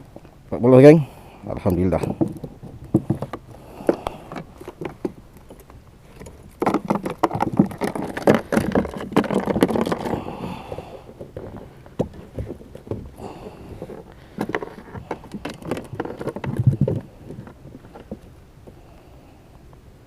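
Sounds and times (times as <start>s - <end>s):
gear knocking and rattling: 6.2s - 10.4s.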